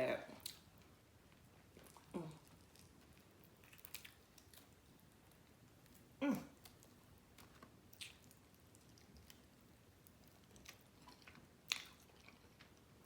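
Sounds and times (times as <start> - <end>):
person chewing food: 0.4 - 13.0.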